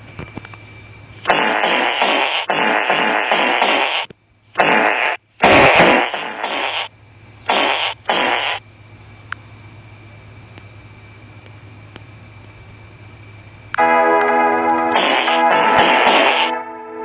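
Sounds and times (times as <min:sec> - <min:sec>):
farts: 0:01.3 - 0:06.9, 0:07.5 - 0:08.6.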